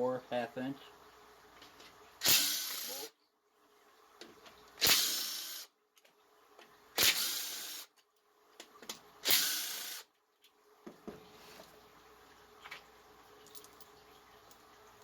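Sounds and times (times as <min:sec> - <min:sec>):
pneumatic tool bursts: 0:02.2 - 0:03.1, 0:04.8 - 0:05.7, 0:06.9 - 0:07.9, 0:09.2 - 0:10.1.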